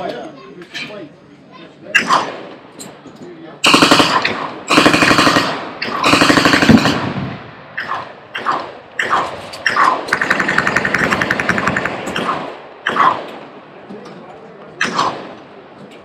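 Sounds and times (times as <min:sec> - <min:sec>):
machine-gun fire: 0:02.0 - 0:02.6, 0:03.6 - 0:13.6, 0:14.8 - 0:15.5.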